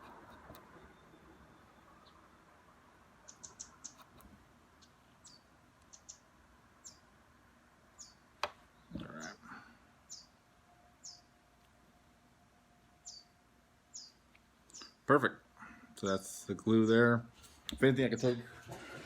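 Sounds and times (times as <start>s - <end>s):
small bird chirping: 3.2s - 7.2s, 7.9s - 9.4s, 10.0s - 10.4s, 11.0s - 11.4s, 13.0s - 15.1s.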